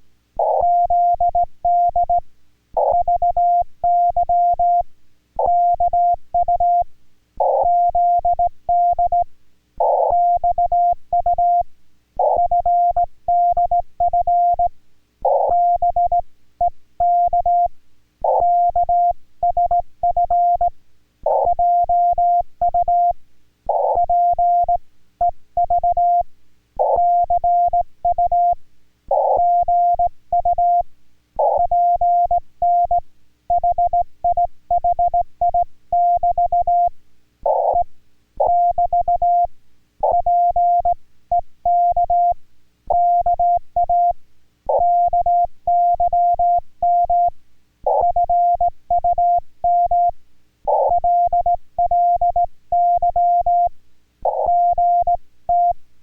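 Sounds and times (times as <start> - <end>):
morse code tone: 54.3 - 55.8.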